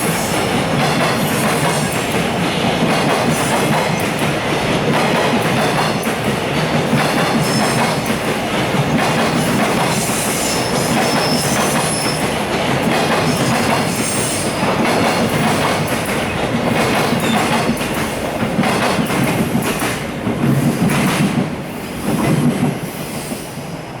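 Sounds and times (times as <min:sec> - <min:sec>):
high wheel squeal: 0:10.4 - 0:12.2.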